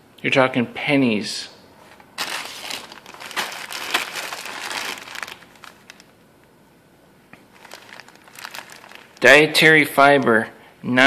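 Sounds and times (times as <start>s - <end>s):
plastic bag of beans crinkling: 2.2s - 6.1s, 7.4s - 10.3s.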